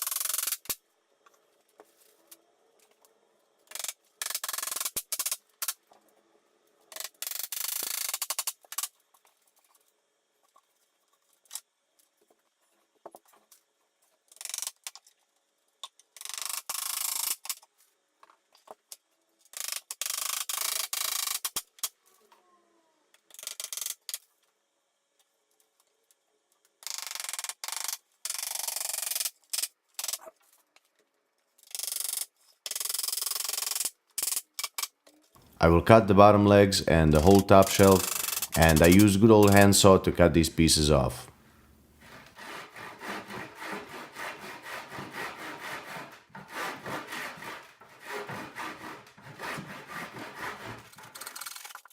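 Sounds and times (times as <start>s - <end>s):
hand tools clicking and scraping wood: 31.6s - 40.2s, 42.0s - 51.9s.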